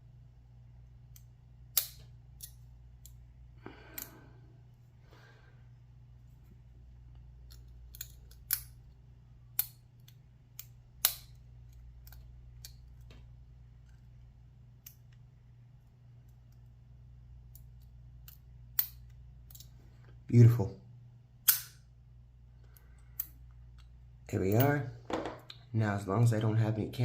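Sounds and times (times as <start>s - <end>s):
low steady hum: 0.0s - 27.0s
metal clicks of lock-picking tools: 1.1s - 3.2s, 7.4s - 13.1s, 17.5s - 19.7s, 22.6s - 23.9s.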